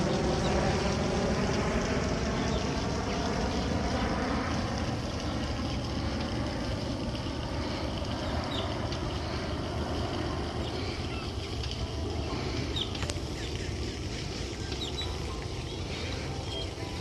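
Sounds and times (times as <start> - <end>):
wind rumbling on microphone: 0.0 - 17.0
high bird chirps: 11.0 - 17.0.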